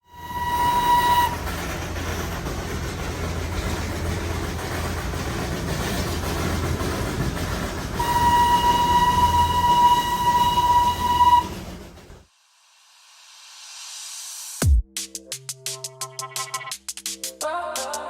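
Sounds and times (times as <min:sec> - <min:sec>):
train whistle: 0:00.0 - 0:01.6, 0:08.0 - 0:12.0
train rumbling and rattling: 0:00.0 - 0:12.2.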